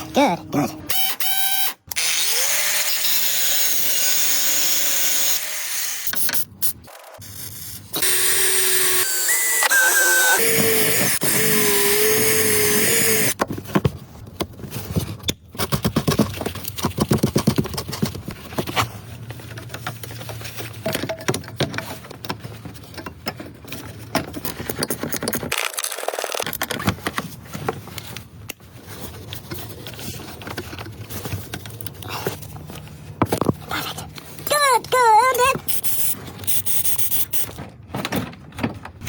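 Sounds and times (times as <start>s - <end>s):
power tool running: 8.0s - 13.4s.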